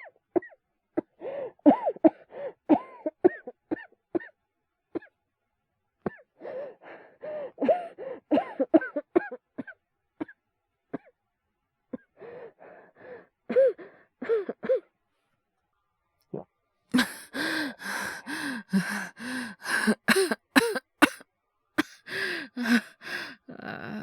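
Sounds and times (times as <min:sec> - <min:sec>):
person coughing harshly: 0:17.0 - 0:21.2, 0:21.8 - 0:23.0.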